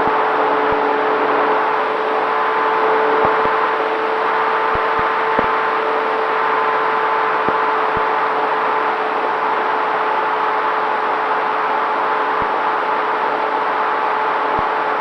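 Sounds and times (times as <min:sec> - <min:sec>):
electric motor whine: 0:00.0 - 0:15.0.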